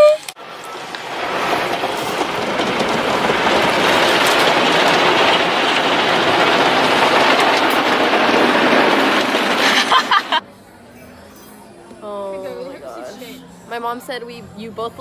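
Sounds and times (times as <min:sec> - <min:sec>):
car wash spraying and scrubbing: 0:00.4 - 0:10.4.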